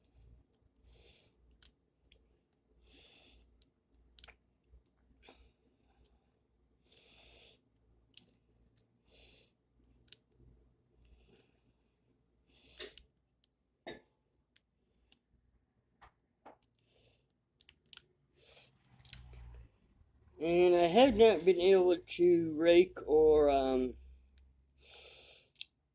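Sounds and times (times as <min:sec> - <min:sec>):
soft hissing breaths: 0:00.0 - 0:03.7, 0:05.2 - 0:07.8, 0:08.9 - 0:09.7, 0:11.0 - 0:13.1, 0:14.2 - 0:15.4, 0:18.3 - 0:19.6, 0:23.4 - 0:25.6
lock pick clicking and scraping: 0:12.7 - 0:13.2, 0:16.6 - 0:18.1.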